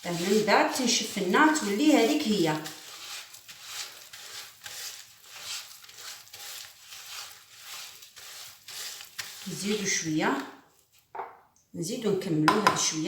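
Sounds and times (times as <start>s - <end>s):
whisk scraping in a pan: 0.0s - 10.9s.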